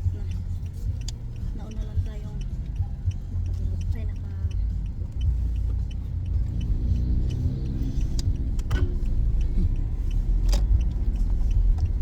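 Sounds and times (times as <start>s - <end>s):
car engine rumbling: 0.0s - 12.0s
light ticking: 0.0s - 12.0s.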